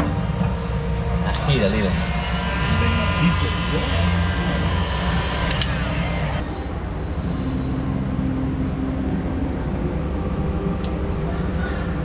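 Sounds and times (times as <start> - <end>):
high many-toned whine: 0.0 - 12.0
low mechanical hum: 0.0 - 12.0.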